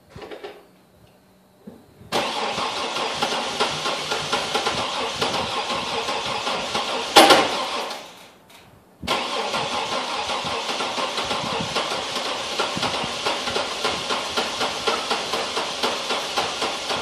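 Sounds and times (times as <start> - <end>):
car engine cranking on starter: 2.1 - 8.3, 9.1 - 17.0.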